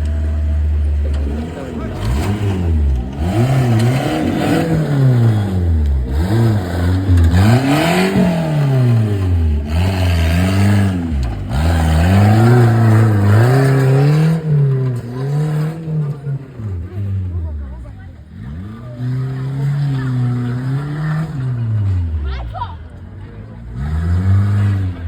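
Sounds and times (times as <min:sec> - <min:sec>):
jeep engine revving: 0:00.0 - 0:25.0.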